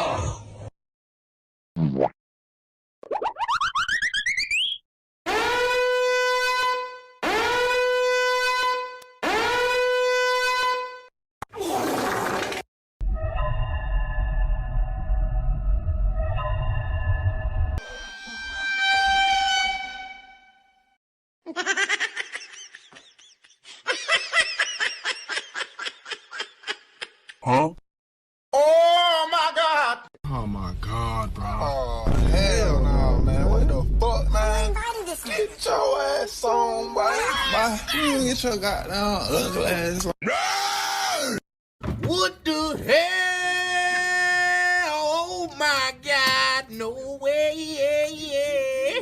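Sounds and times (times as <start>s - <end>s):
buzzy horn blasts: 5.3s - 11.1s.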